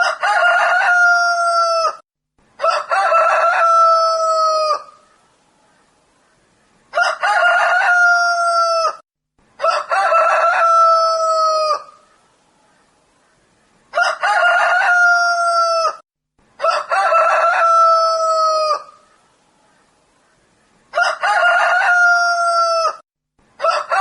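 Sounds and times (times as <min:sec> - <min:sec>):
rooster crowing: 0:00.0 - 0:02.0, 0:02.6 - 0:05.0, 0:06.9 - 0:09.0, 0:09.6 - 0:12.0, 0:13.9 - 0:16.0, 0:16.6 - 0:19.0, 0:20.9 - 0:23.0, 0:23.6 - 0:24.0.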